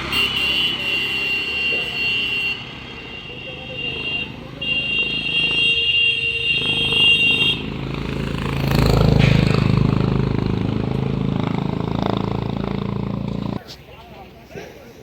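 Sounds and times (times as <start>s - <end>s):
engine running: 6.5s - 13.6s.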